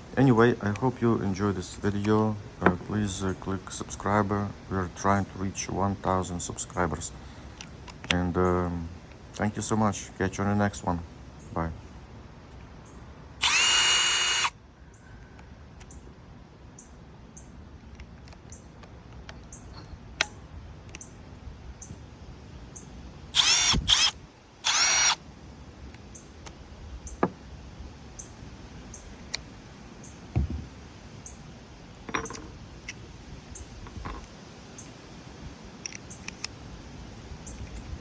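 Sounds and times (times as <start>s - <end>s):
light clicks and knocks: 1.9s - 3.3s, 32.0s - 33.0s
impact driver motor whining: 13.4s - 14.5s, 23.4s - 25.2s.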